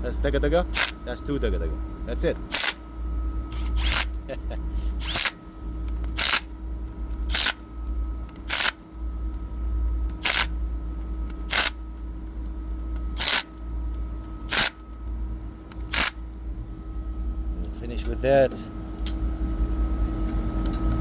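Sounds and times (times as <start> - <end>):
low machinery hum: 0.0 - 21.0
ratchet wrench clicking: 0.8 - 1.0, 2.5 - 2.8, 3.5 - 4.2, 5.0 - 5.4, 6.1 - 6.5, 7.3 - 7.6, 8.4 - 8.8, 10.1 - 10.5, 11.4 - 11.8, 13.2 - 13.6, 14.4 - 14.8, 15.7 - 16.2.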